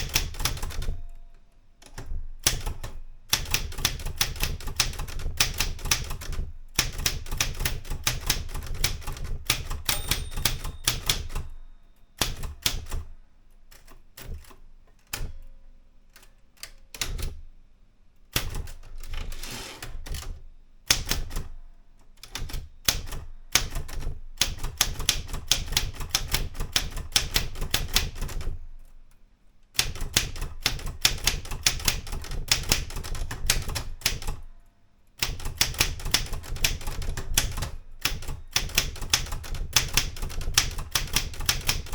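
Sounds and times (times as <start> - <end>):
typewriter key strikes: 0.0 - 11.6, 12.2 - 13.1, 29.8 - 34.4, 35.2 - 41.9.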